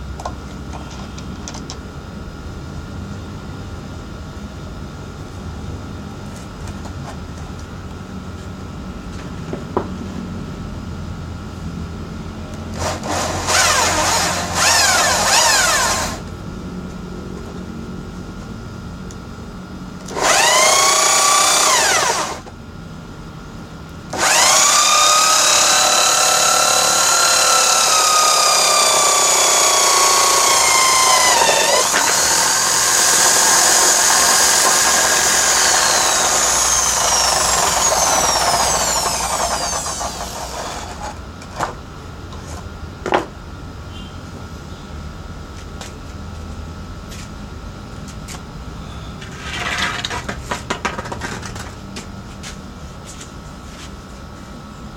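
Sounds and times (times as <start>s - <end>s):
high whine of loaded sander: 12.2s - 22.6s, 24.0s - 42.7s
drill-driven drum sander running: 12.6s - 16.4s, 20.0s - 22.5s, 24.1s - 41.3s.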